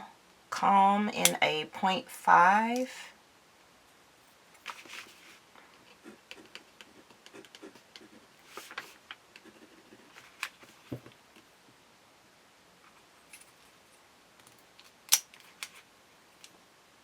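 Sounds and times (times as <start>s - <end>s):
pen packaging clicks and rustles: 10.1s - 11.0s.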